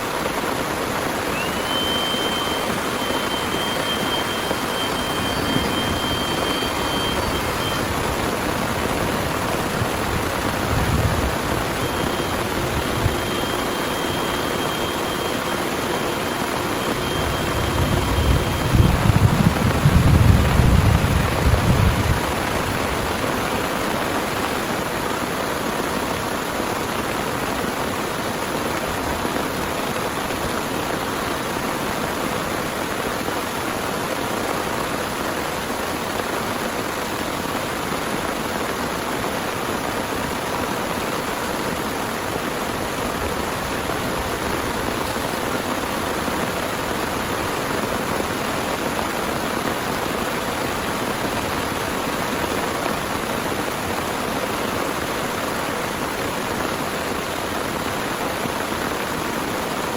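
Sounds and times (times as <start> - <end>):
heavy rain pouring: 0.0 - 59.9
thunder rumbling: 1.0 - 24.2
faint high tone: 1.2 - 19.9.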